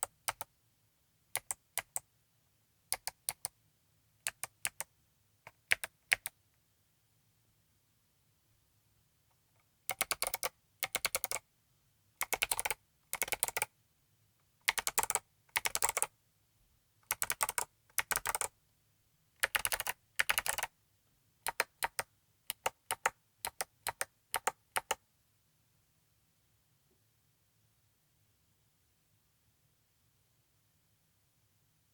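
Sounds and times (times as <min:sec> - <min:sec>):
clicky mechanical keyboard typing: 0:00.0 - 0:00.5, 0:01.4 - 0:02.0, 0:02.9 - 0:03.5, 0:04.3 - 0:04.9, 0:05.5 - 0:06.4, 0:09.9 - 0:11.4, 0:12.2 - 0:13.7, 0:14.7 - 0:16.1, 0:17.1 - 0:18.5, 0:19.4 - 0:20.7, 0:21.5 - 0:25.0.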